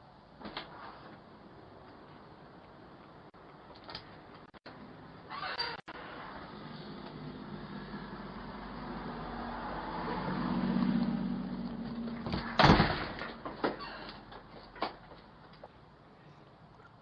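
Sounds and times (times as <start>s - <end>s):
vehicle engine hum: 5.9s - 16.0s
loud thump: 12.2s - 13.8s.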